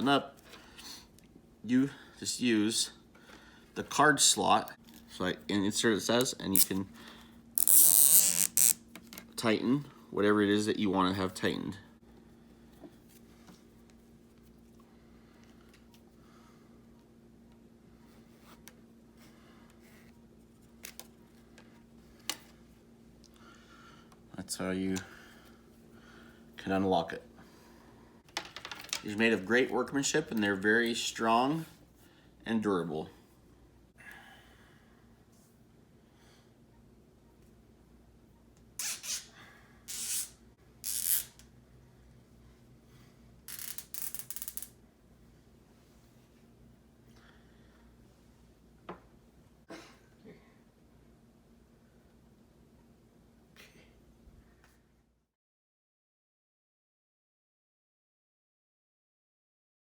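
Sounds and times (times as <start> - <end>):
steady low hum: 0.0 - 28.3
zip tie rasping: 6.6 - 6.8, 7.6 - 8.8, 38.8 - 41.4, 43.5 - 44.7
plastic zip tie clicks: 7.6 - 8.8
zip tie ratchet clicks: 7.6 - 8.8, 39.9 - 41.5, 43.5 - 44.7.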